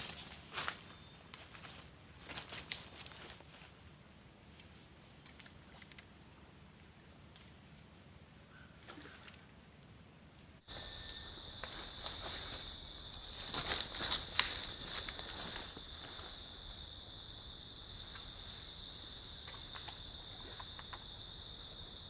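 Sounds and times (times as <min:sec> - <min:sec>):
high-pitched insect drone: 0:10.6 - 0:22.0.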